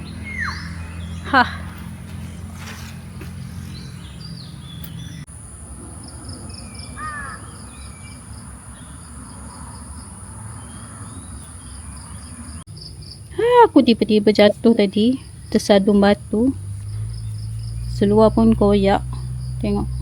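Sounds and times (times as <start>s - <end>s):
bird calls: 0.0s - 13.4s
high insect drone: 2.6s - 20.0s
pulsing insect trill: 3.8s - 20.0s.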